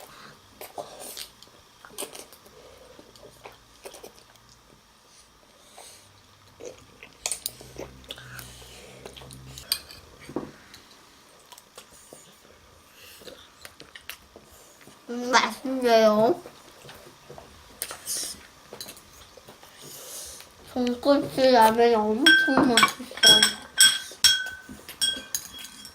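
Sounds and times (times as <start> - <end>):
person chewing: 0.6 - 4.6, 6.5 - 9.7, 13.1 - 15.0
utensils clicking and tapping: 22.2 - 25.9.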